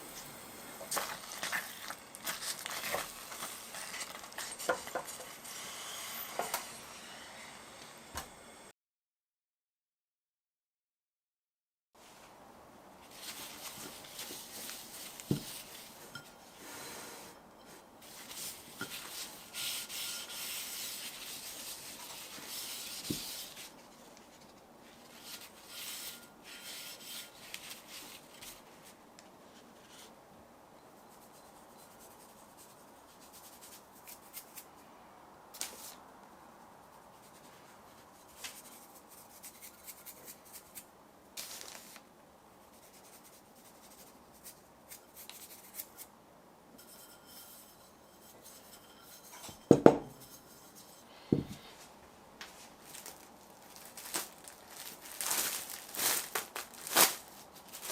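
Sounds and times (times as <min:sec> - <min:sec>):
soft rubbing and scraping: 0:13.0 - 0:30.2, 0:46.8 - 0:57.9.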